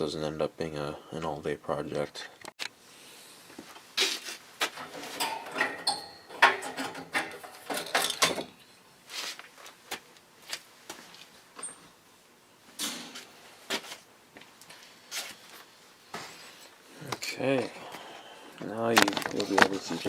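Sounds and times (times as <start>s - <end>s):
tools clicking and scraping on metal: 4.8s - 8.6s.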